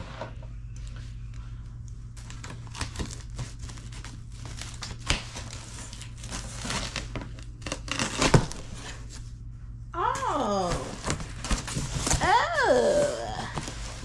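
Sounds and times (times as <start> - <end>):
packaging crinkling and tearing: 2.2 - 9.1, 10.8 - 14.0.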